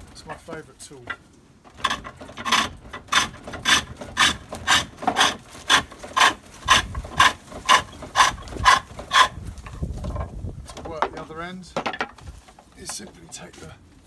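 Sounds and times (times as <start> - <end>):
lathe tool scraping wood: 1.8 - 9.8.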